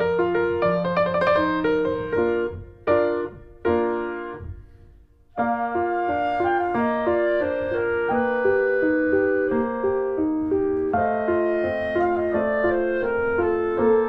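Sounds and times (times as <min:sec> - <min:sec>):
gentle piano melody: 0:00.0 - 0:14.0.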